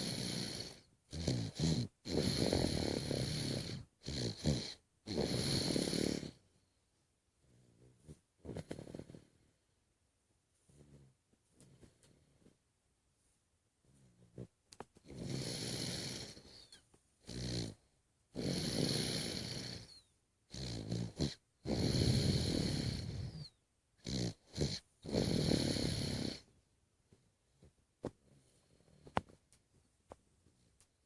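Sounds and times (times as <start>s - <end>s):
person snoring: 0.0s - 6.4s, 7.4s - 9.4s, 13.9s - 17.8s, 18.4s - 26.5s.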